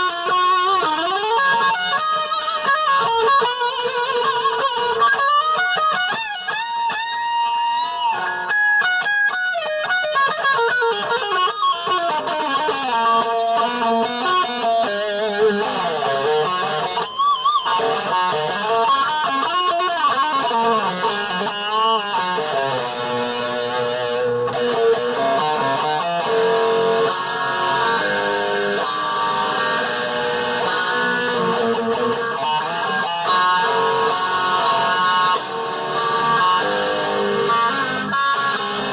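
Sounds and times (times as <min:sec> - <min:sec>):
electric guitar lead lines: 0:00.0 - 0:38.9.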